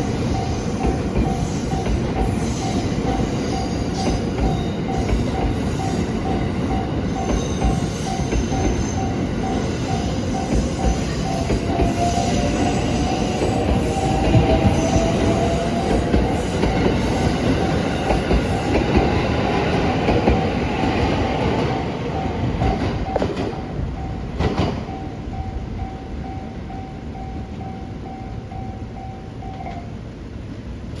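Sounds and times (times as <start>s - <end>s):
level crossing warning bell: 0.0s - 30.2s
train wheels clattering over rail joints: 22.5s - 25.0s.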